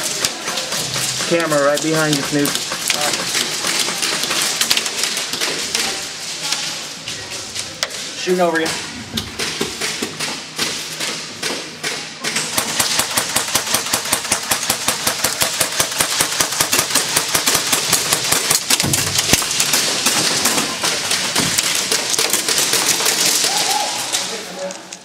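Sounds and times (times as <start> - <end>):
airsoft guns firing: 9.4 - 24.4.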